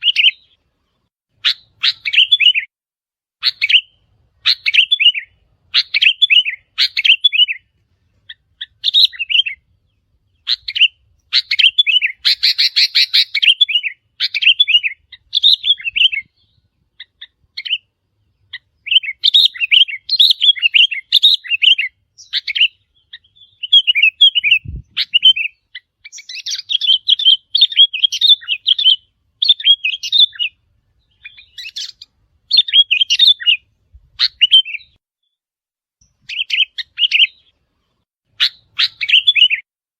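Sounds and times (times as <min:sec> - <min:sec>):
bulbuls calling: 0:03.4 - 0:09.7, 0:10.3 - 0:33.6, 0:38.4 - 0:39.6
harsh bird chatter: 0:10.3 - 0:17.8, 0:18.4 - 0:30.5, 0:31.1 - 0:33.6.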